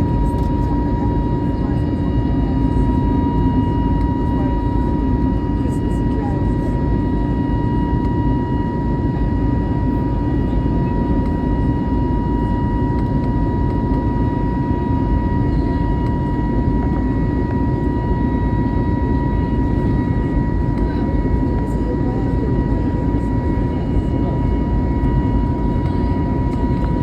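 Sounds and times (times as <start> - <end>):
aircraft cabin rumble and hiss: 0.0 - 27.0.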